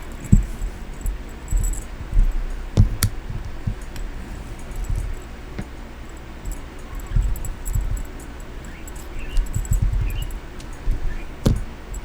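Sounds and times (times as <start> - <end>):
light metallic jingling: 0.0 - 12.0
sharp clicks: 6.5 - 12.0.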